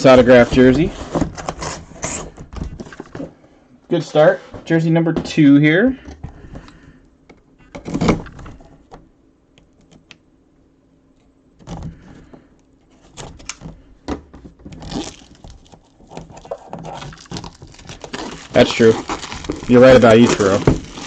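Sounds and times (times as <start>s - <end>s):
box handling rustles: 0.0s - 3.4s, 12.9s - 21.0s.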